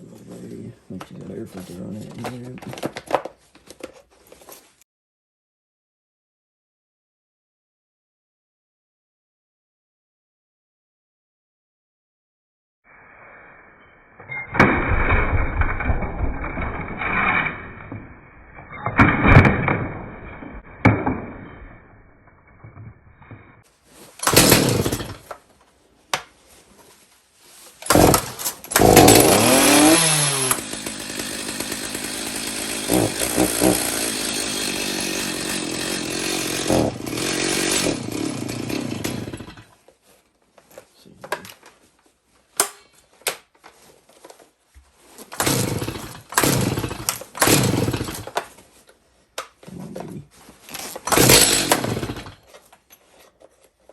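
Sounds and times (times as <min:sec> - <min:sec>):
chainsaw engine revving: 0:24.2 - 0:25.3, 0:27.8 - 0:39.7, 0:45.3 - 0:48.4, 0:50.8 - 0:52.4
starter cord pulls: 0:24.2 - 0:25.4, 0:27.8 - 0:30.7, 0:45.3 - 0:48.5, 0:50.7 - 0:52.8.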